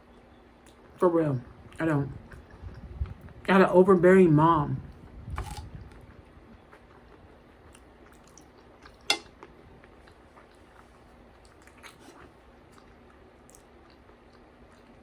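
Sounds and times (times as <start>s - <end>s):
person chewing: 5.3s - 15.0s.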